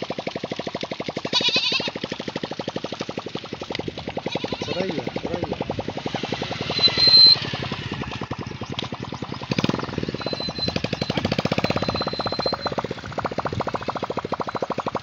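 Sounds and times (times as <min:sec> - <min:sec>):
small engine chugging: 0:00.0 - 0:15.0.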